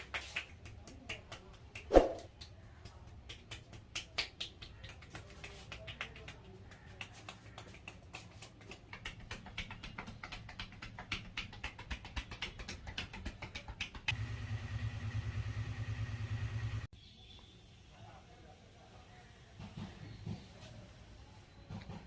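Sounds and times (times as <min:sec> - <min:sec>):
hands slapping a head: 0:00.0 - 0:14.2
low motor hum: 0:14.1 - 0:16.9.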